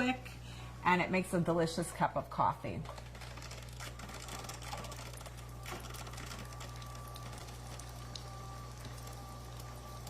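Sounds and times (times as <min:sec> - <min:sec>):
coffee maker buzzing hum: 0:03.0 - 0:10.0.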